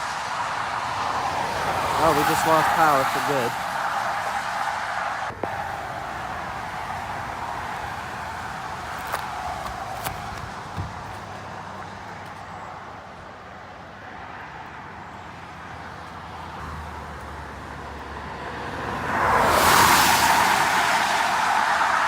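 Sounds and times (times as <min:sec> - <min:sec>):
vehicle passing: 0:00.0 - 0:12.6, 0:16.2 - 0:22.0
background rush: 0:00.0 - 0:12.7.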